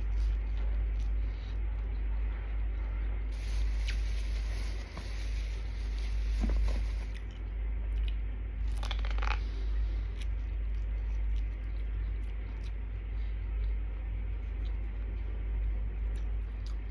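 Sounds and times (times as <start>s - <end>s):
low rumble: 0.0s - 16.1s
biting and chewing corn: 3.4s - 9.5s.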